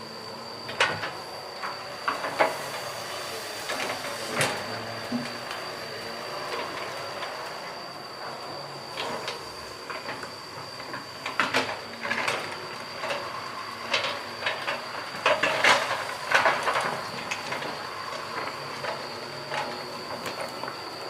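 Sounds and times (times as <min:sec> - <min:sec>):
excavator high whine: 0:00.0 - 0:21.0
excavator metallic clanks and scrapes: 0:13.9 - 0:20.7.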